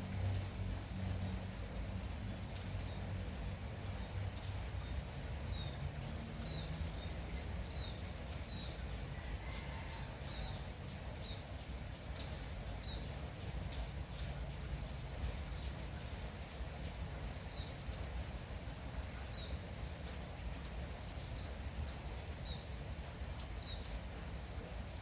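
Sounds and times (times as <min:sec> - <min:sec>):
drip-like ticks: 0:00.0 - 0:25.0
light rain falling: 0:00.0 - 0:25.0.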